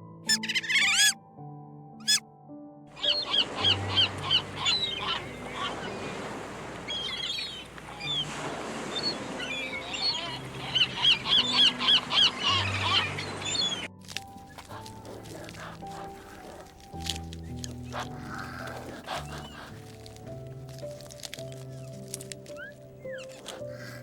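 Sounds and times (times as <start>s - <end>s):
soft background music: 0.0s - 24.0s
bird calling in fast runs: 3.0s - 20.8s.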